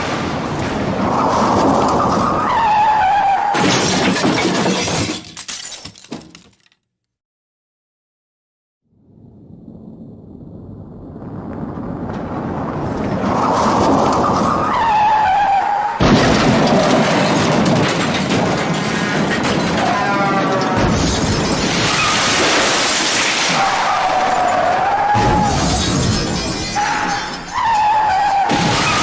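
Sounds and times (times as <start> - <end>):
breaking glass: 3.6 - 6.8, 16.0 - 29.0
heavy crash impact: 16.0 - 27.6
crashing metal: 16.0 - 29.0
tyres squealing: 23.5 - 29.0.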